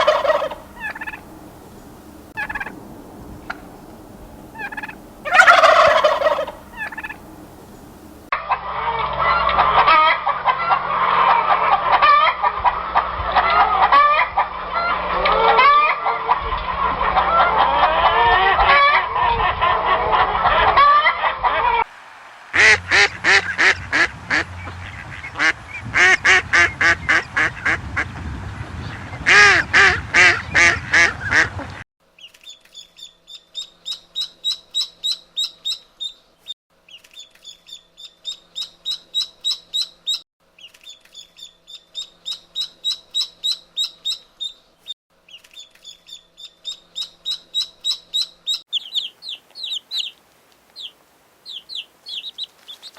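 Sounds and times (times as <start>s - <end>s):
ducks and geese quacking and honking: 0.0s - 1.3s, 2.4s - 2.8s, 4.5s - 21.9s, 22.6s - 31.8s
noisy bird flock: 0.0s - 8.3s, 22.5s - 31.8s, 46.7s - 52.9s
rapid high-pitched peeping: 45.3s - 50.2s, 50.8s - 52.9s.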